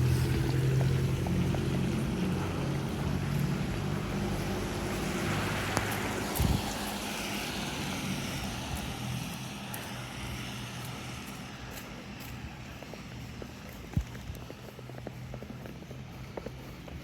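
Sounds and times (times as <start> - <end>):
vehicle engine hum: 0.0 - 17.0.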